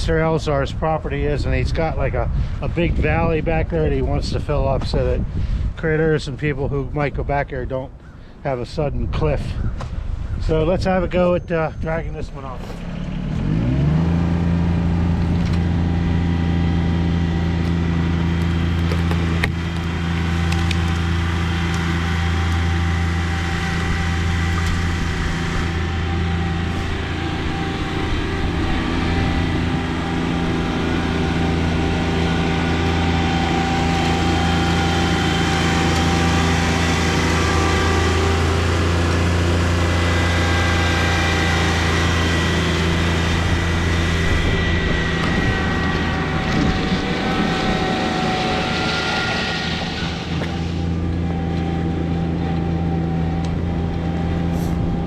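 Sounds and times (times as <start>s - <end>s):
tractor diesel engine revving: 11.8s - 55.0s.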